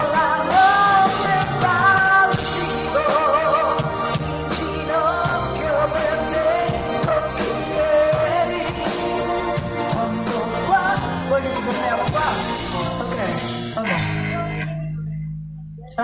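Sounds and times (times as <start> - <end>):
woman singing: 0.0 - 12.5
live pop band playing: 0.0 - 16.0.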